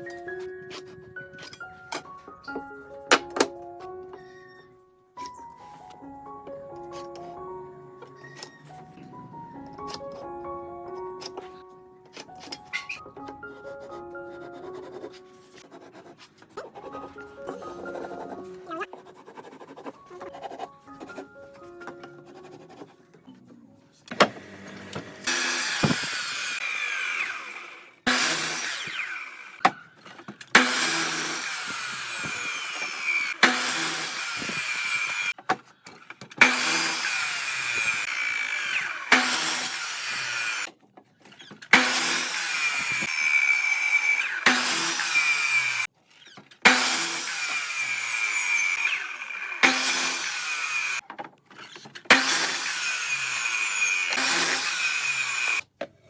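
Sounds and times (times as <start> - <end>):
power tool cutting wood: 24.1 - 35.4, 36.0 - 40.7, 41.5 - 51.0, 51.6 - 55.7.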